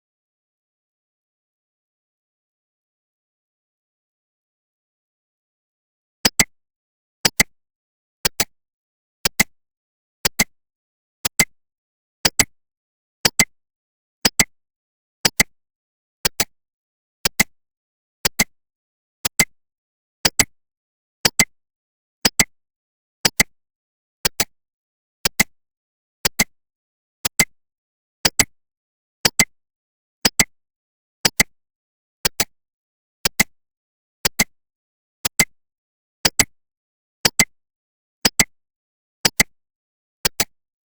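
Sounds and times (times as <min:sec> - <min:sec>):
clock tick double click: 0:06.3 - 0:06.5, 0:08.2 - 0:08.5, 0:09.2 - 0:09.5, 0:10.2 - 0:10.5, 0:11.2 - 0:11.5, 0:13.2 - 0:13.5, 0:15.2 - 0:15.5, 0:16.2 - 0:16.5, 0:19.2 - 0:19.5, 0:27.2 - 0:27.5, 0:29.2 - 0:29.5, 0:31.2 - 0:31.5, 0:32.2 - 0:32.5, 0:33.2 - 0:33.5, 0:34.3 - 0:34.5, 0:35.2 - 0:35.5, 0:37.2 - 0:37.5, 0:38.2 - 0:38.5, 0:39.2 - 0:39.5, 0:40.2 - 0:40.6.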